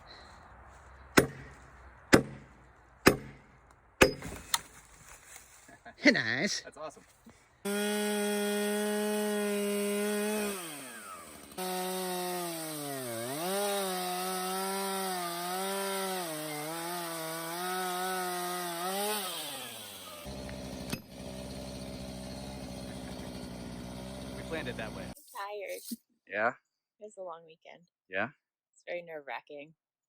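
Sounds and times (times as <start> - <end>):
chainsaw revving and cutting wood: 7.6 - 25.2.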